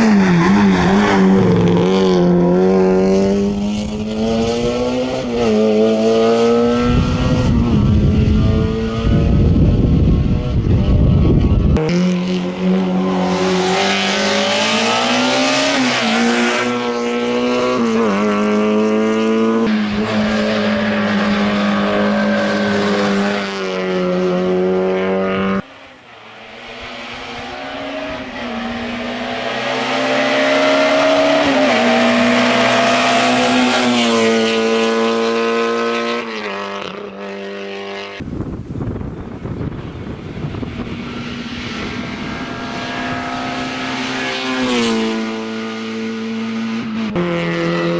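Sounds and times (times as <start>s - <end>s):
rally car engine revving: 0.0s - 47.9s.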